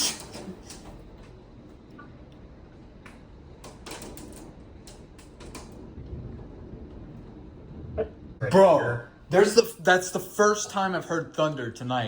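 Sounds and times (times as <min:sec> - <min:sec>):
thunder rumbling: 0:04.4 - 0:09.6.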